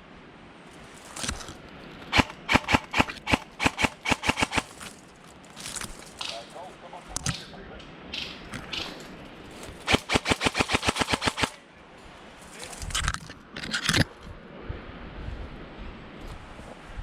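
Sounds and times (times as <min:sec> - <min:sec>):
airsoft gun full-auto burst: 0:02.1 - 0:04.8, 0:09.9 - 0:11.6.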